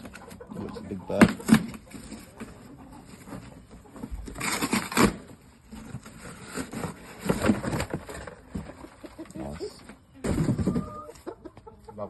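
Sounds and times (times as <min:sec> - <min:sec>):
cardboard box rustling: 0:01.2 - 0:08.9.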